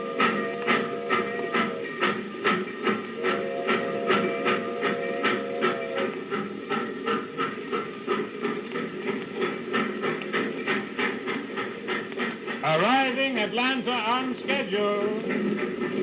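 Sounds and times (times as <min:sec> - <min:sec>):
steam whistle blowing: 0:00.0 - 0:02.6, 0:03.2 - 0:06.1
record hiss: 0:00.0 - 0:16.0
steam locomotive chuffing: 0:00.0 - 0:16.0.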